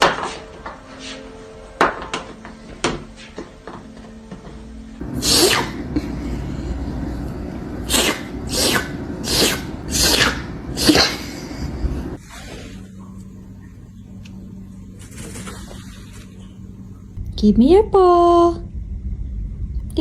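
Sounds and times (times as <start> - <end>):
music: 0.0 - 7.3
sneeze-like bursts: 5.1 - 6.0, 7.8 - 11.5.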